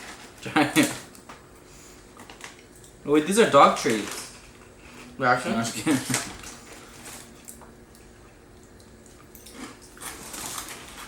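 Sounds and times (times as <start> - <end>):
person chewing crackers: 6.3 - 11.0.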